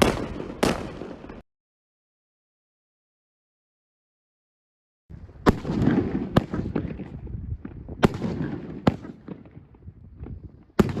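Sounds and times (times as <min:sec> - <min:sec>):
fireworks bangs: 0:00.0 - 0:01.4, 0:05.1 - 0:11.0
fireworks pops and crackling: 0:00.0 - 0:01.4, 0:05.4 - 0:11.0.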